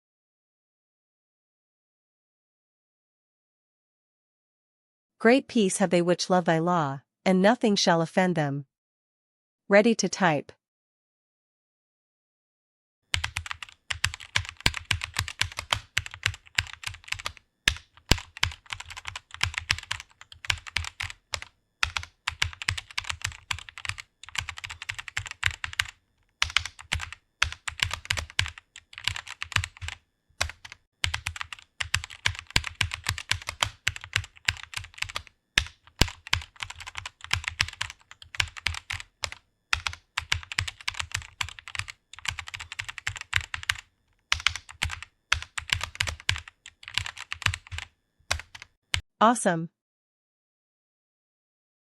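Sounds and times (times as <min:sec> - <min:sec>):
fast typing on keyboard: 0:13.1 - 0:49.0.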